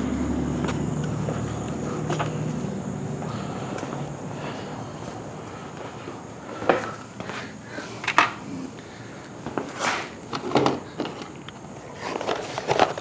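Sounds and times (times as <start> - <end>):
steady background noise: 0.0 - 13.0
objects knocking and scraping: 9.4 - 13.0.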